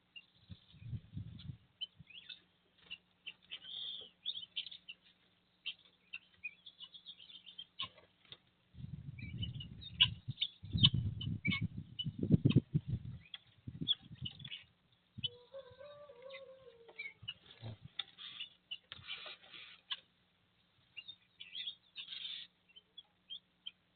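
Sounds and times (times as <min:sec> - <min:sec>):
birds chirping: 0:00.0 - 0:23.9
low rumbling noise: 0:08.7 - 0:14.5.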